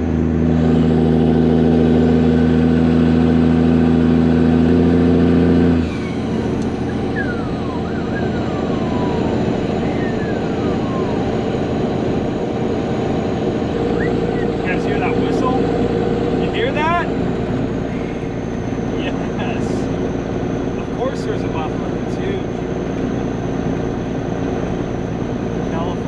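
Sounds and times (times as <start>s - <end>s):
diesel truck engine running: 0.0s - 26.0s
faint falling whistles: 6.0s - 8.6s.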